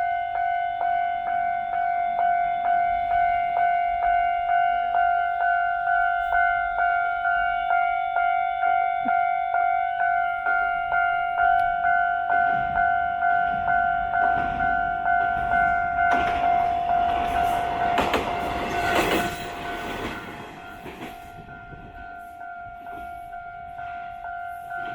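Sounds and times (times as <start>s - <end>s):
level-crossing warning bell: 0.0s - 24.9s
train rumble: 11.3s - 24.9s.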